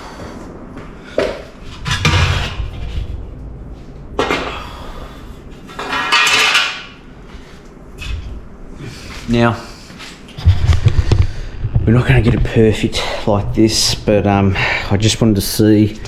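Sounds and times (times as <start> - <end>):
sheet metal clanking: 1.6 - 7.0
metal scraping rustle: 1.6 - 8.4.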